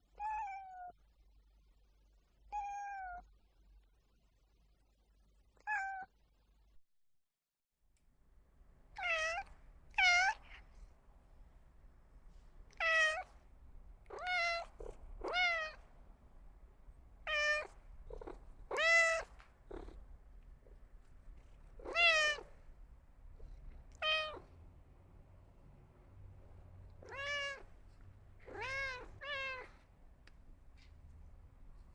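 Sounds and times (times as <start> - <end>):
cat meowing: 0.2 - 0.9, 2.5 - 3.2, 5.6 - 6.1, 9.0 - 10.6, 12.7 - 13.4, 14.0 - 15.8, 17.2 - 20.0, 21.8 - 22.6, 23.9 - 24.5, 27.0 - 27.8, 28.4 - 29.8.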